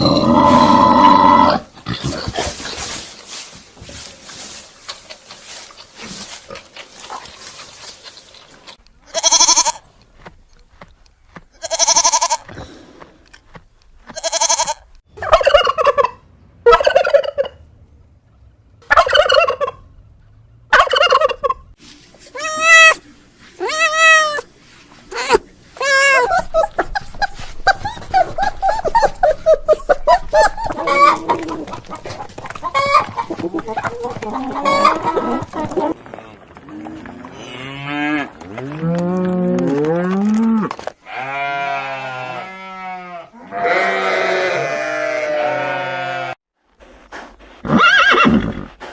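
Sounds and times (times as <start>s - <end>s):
chickens calling: 14.5s - 17.6s, 18.8s - 19.9s, 20.7s - 21.8s, 25.2s - 36.5s.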